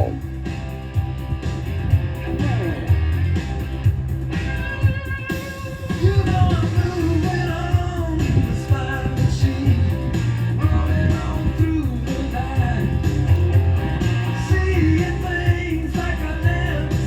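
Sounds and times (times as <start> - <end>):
bass line: 0.0 - 17.0
electric guitar: 0.0 - 17.0
person singing: 5.9 - 13.0, 14.5 - 17.0.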